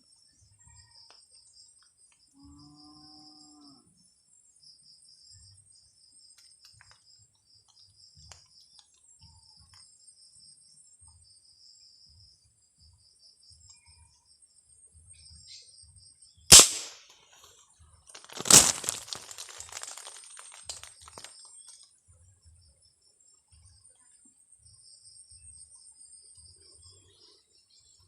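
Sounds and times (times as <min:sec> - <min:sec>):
crickets chirping: 0:00.0 - 0:17.1, 0:18.2 - 0:28.0
marble gun crack: 0:16.5 - 0:17.1, 0:18.2 - 0:21.3
rustling in leaves and branches: 0:18.1 - 0:21.4
crash: 0:18.2 - 0:21.3.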